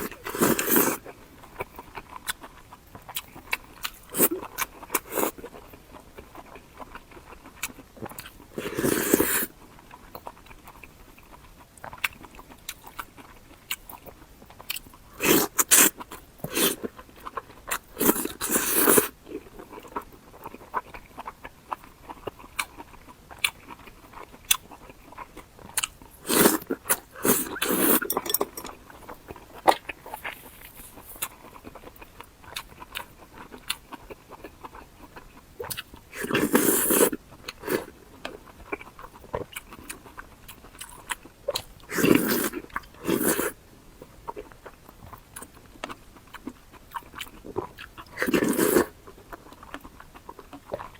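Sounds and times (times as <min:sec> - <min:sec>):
crunchy bites and chewing: 0:11.8 - 0:28.8.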